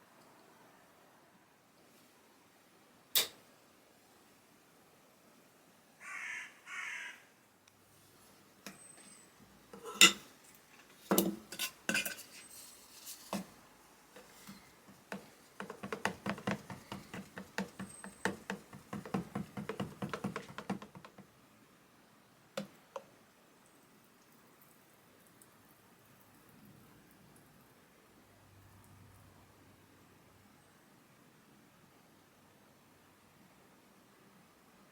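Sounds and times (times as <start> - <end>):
hard objects knocking and clinking: 9.8 - 12.5, 14.2 - 21.3.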